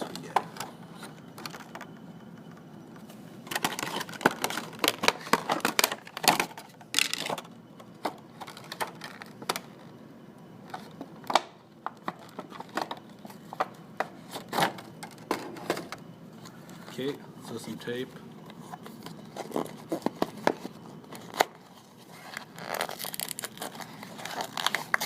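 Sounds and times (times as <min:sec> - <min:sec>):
packaging clicks: 0:03.5 - 0:07.4
packaging crinkling: 0:03.5 - 0:07.5, 0:19.0 - 0:25.0.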